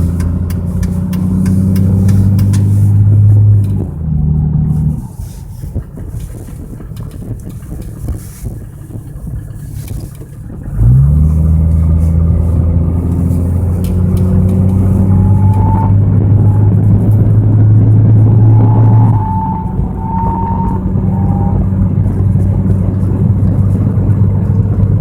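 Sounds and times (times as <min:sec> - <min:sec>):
car engine rumble: 0:00.0 - 0:25.0
loud low hum: 0:10.4 - 0:25.0
faint high whistle: 0:14.8 - 0:22.6.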